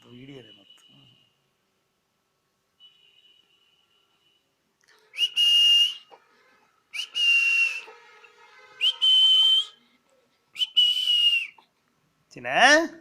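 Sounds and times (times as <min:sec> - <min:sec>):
high whistling squeaks: 0:04.9 - 0:09.9, 0:10.6 - 0:11.6.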